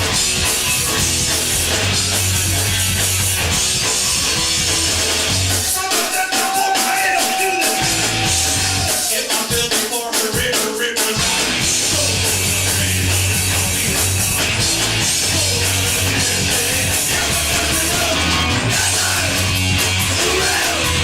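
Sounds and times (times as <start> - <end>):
bass guitar low notes: 0.0 - 5.6, 11.2 - 21.0
distorted electric guitar: 0.0 - 9.7, 11.2 - 21.0
drum kit with cymbals: 0.0 - 21.0.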